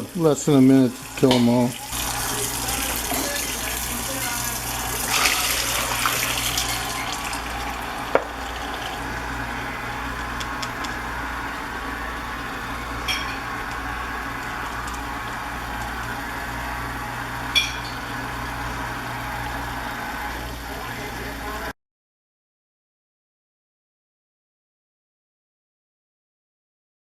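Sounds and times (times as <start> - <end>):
water running into trap: 0.0 - 20.7
constant low hum: 1.8 - 21.6.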